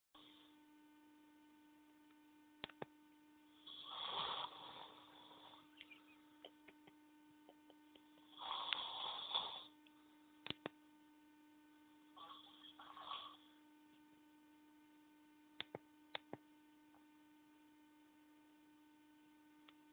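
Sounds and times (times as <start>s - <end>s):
steady hum: 0.2s - 19.9s
person snoring: 3.5s - 6.2s, 8.2s - 9.8s, 12.1s - 13.6s.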